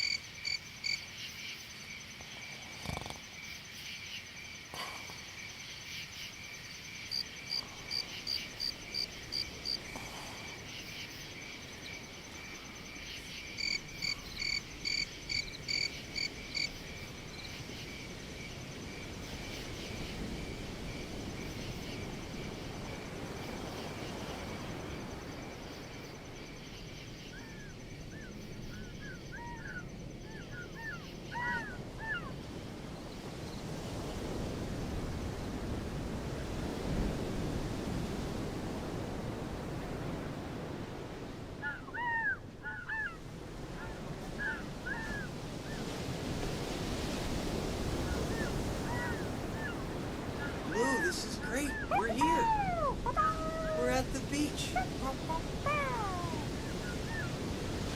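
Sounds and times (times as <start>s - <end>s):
loud pulsed insect calls: 0.0s - 2.2s, 10.6s - 31.4s, 47.7s - 57.6s
insects chirring: 0.0s - 57.9s.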